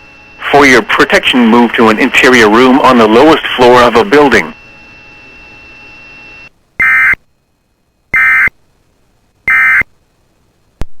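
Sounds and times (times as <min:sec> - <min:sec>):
buzzing digital data tones: 0:02.2 - 0:07.3, 0:08.1 - 0:08.6, 0:09.5 - 0:09.9.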